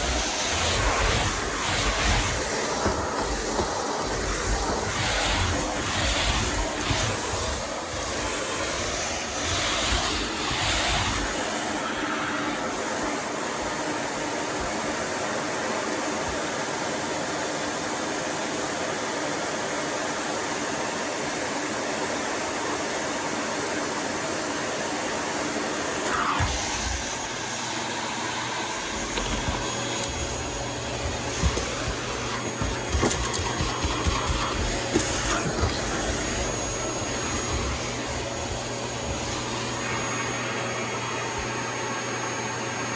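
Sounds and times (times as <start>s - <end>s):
things hitting vacuum nozzle: 0.0s - 11.8s, 25.8s - 41.6s
vacuum cleaner running: 0.0s - 42.9s.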